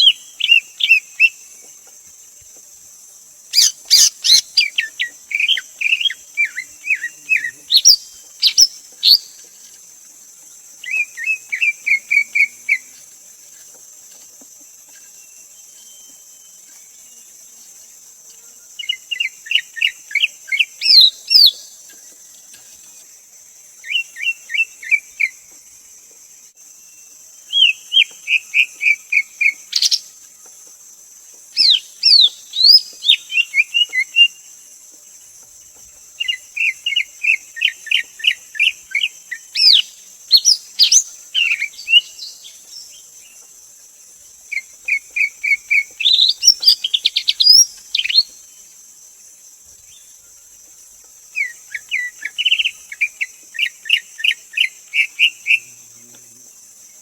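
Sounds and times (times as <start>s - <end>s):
bird singing whistled notes: 0.0s - 1.4s, 3.5s - 9.4s, 18.8s - 21.8s, 26.8s - 30.1s, 31.6s - 34.4s, 36.2s - 43.0s, 44.5s - 48.5s, 51.4s - 55.8s
steady high hiss: 0.0s - 57.0s.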